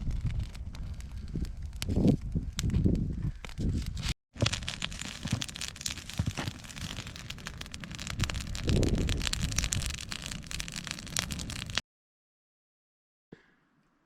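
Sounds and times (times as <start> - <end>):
wind rumble on microphone: 0.0 - 4.1, 5.6 - 11.8
wood fire crackling and popping: 0.0 - 11.8.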